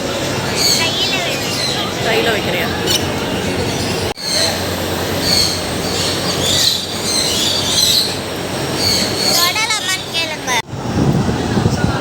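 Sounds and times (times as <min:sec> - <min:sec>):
crowd hubbub: 0:00.0 - 0:12.0
animals squealing: 0:00.2 - 0:10.6.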